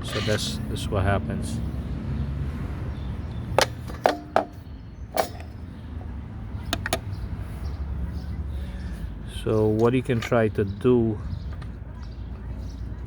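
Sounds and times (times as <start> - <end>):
sharp knocks and clicks: 6.7 - 7.1.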